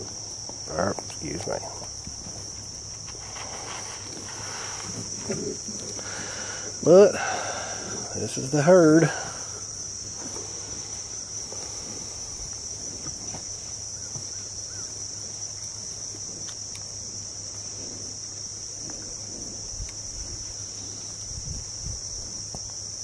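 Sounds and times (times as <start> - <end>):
insect chorus buzzing: 0.0 - 23.0.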